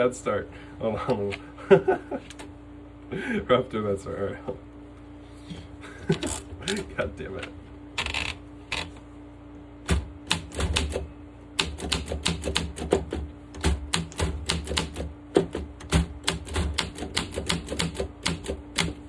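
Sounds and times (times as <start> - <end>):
typewriter key strikes: 9.9 - 11.0, 11.6 - 19.0.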